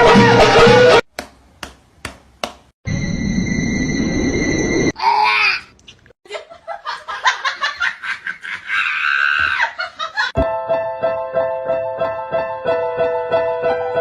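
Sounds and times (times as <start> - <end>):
person laughing: 6.3 - 10.4
piano music: 10.4 - 14.0.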